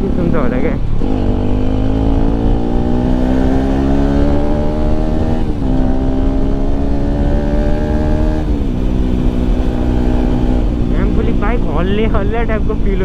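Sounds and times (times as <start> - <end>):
motorcycle engine accelerating: 0.0 - 13.0.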